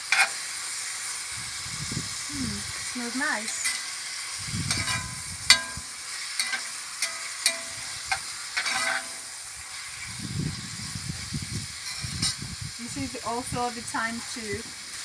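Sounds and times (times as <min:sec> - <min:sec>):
utensil knocking and scraping wok: 0:00.0 - 0:01.9, 0:03.1 - 0:12.6
meat sizzling in wok: 0:00.0 - 0:15.0.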